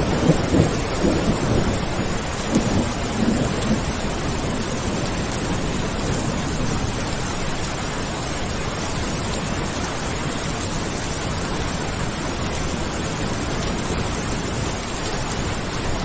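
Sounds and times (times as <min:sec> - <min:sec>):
heavy rain: 0:00.0 - 0:16.0.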